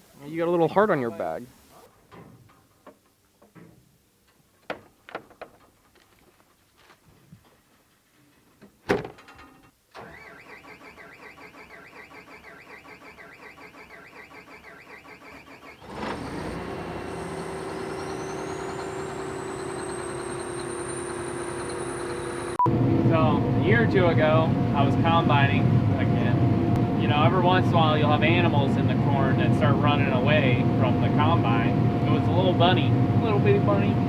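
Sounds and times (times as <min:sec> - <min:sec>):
engine cranking on starter: 0:09.9 - 0:22.6
engine running with rising whine: 0:14.4 - 0:34.0.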